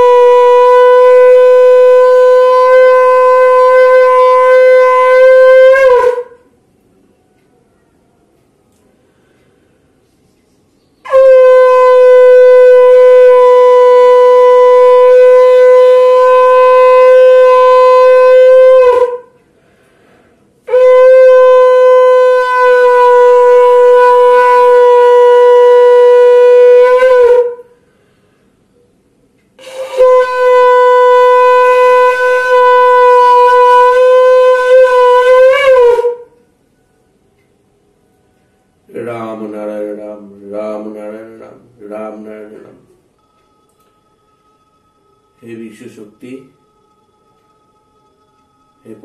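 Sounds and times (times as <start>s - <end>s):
conch shell blasts: 0.0s - 6.5s, 11.0s - 19.4s, 20.6s - 27.8s, 29.6s - 36.4s.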